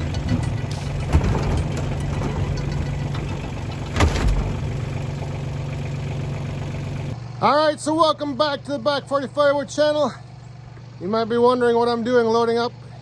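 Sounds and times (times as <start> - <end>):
sharp knocks: 0.0 - 5.3
engine idling: 0.0 - 7.4.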